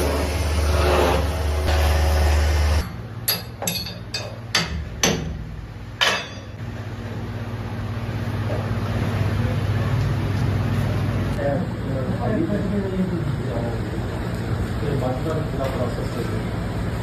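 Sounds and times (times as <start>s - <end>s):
workshop machine running: 0.0s - 17.0s
low background hum: 2.4s - 17.0s
ringing metal knocks: 3.3s - 6.6s.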